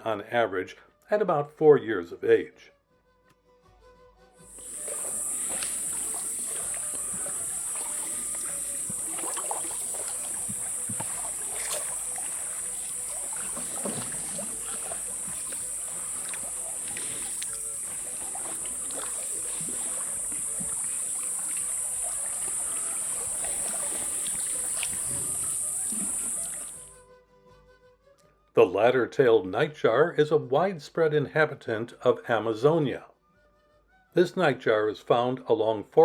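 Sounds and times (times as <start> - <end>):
high-pitched hiss: 4.4 - 27.0
faint ticks and rustles: 4.6 - 26.9.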